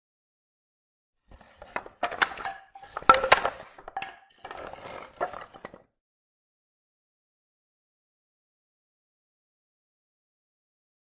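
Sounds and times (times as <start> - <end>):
wood creaking: 1.3 - 5.8
wood pieces knocking and scraping: 1.3 - 5.9.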